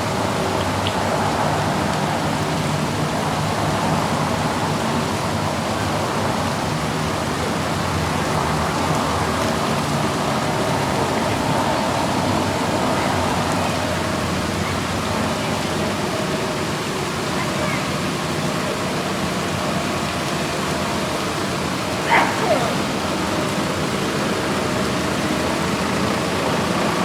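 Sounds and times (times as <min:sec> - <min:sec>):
tyre and road noise: 0:21.4 - 0:26.2.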